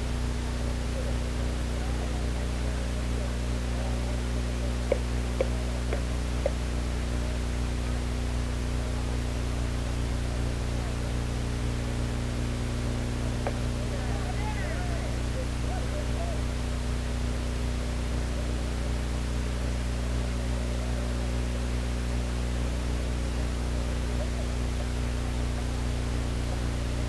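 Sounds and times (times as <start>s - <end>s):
electrical hum and hiss: 0.0s - 27.0s.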